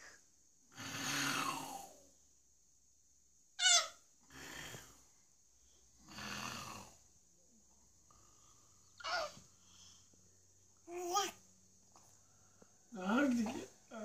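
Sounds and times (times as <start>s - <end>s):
man snoring heavily: 0.7s - 2.0s, 6.0s - 7.1s.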